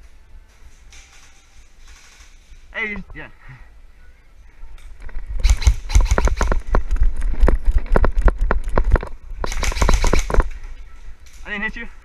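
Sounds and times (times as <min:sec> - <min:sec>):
low rumbling on microphone: 0:04.5 - 0:09.5.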